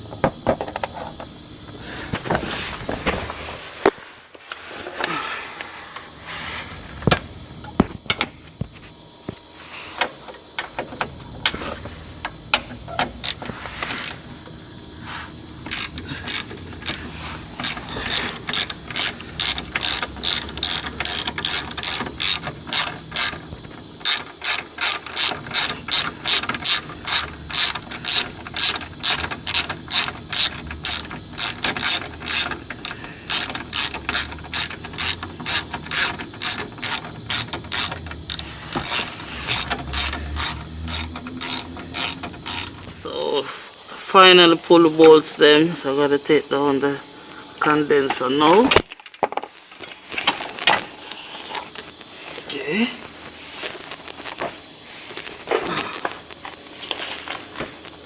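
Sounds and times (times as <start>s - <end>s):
ratchet wrench clicking: 12.6s - 14.3s, 15.6s - 43.1s.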